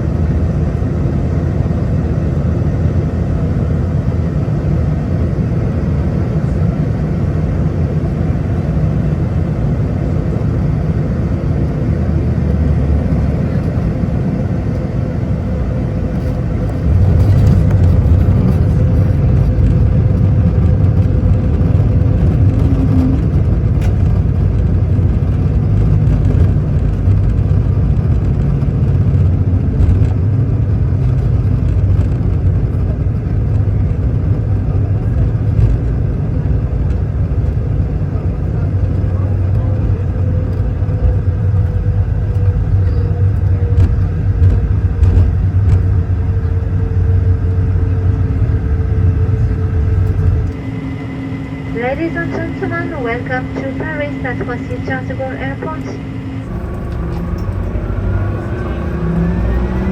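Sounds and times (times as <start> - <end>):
airplane cabin rumble: 0.0 - 59.9.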